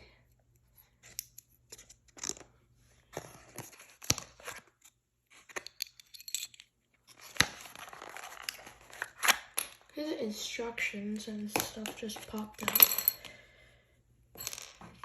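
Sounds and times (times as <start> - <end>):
packaging rustling: 7.2 - 9.5.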